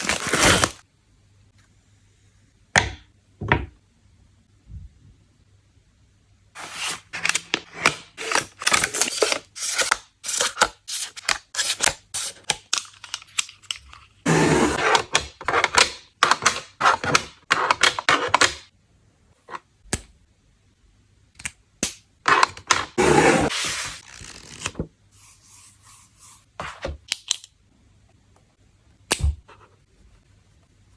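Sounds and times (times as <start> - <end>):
plastic packaging rustling: 0.0 - 0.8.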